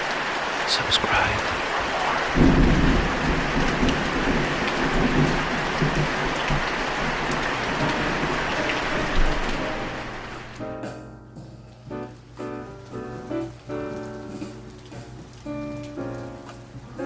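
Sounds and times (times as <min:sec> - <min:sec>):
thunder rumbling: 0:00.0 - 0:10.6
heavy rain: 0:00.0 - 0:10.8, 0:11.6 - 0:17.0.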